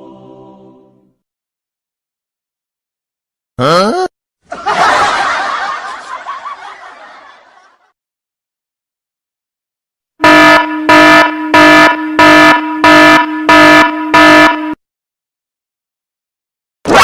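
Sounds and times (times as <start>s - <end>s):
air horn blasts: 10.2s - 14.8s.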